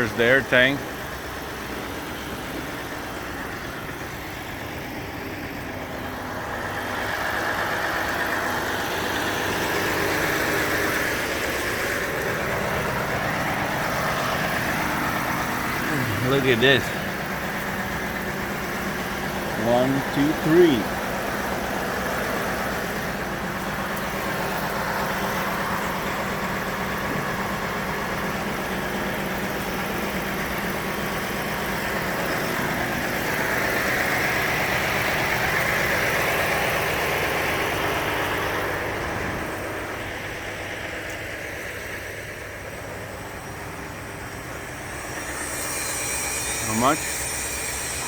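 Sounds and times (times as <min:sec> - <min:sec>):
truck engine idling: 0:00.0 - 0:48.0
hiss: 0:44.3 - 0:48.0.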